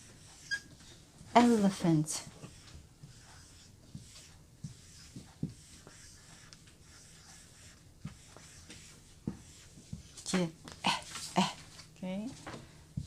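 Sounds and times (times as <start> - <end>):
pen scratching handwriting: 1.4 - 10.4.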